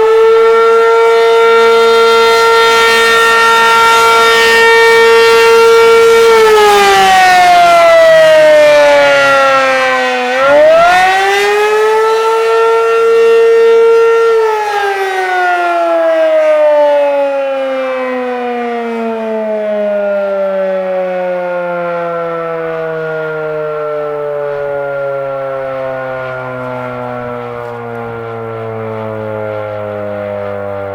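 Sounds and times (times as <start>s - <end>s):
warning siren winding: 0.0s - 20.6s.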